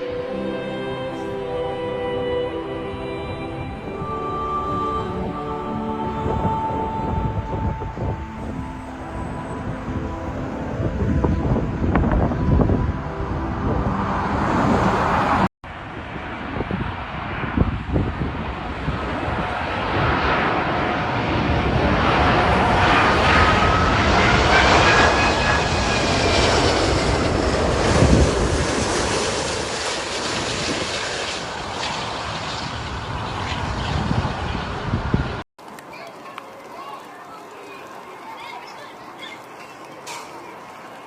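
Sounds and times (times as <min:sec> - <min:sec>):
jet engines whining: 0:04.6 - 0:35.4.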